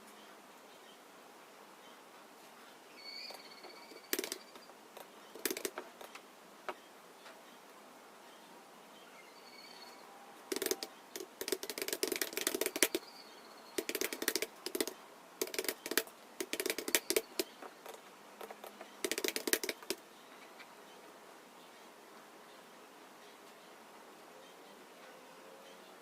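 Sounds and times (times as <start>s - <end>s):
computer keyboard typing: 4.0s - 4.6s, 5.4s - 5.8s, 10.5s - 13.0s, 13.8s - 20.0s.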